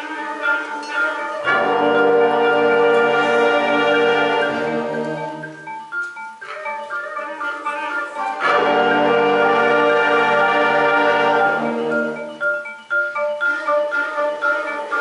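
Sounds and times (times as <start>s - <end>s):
concert band playing: 0.0s - 15.0s
rapid mallet percussion notes: 0.0s - 15.0s.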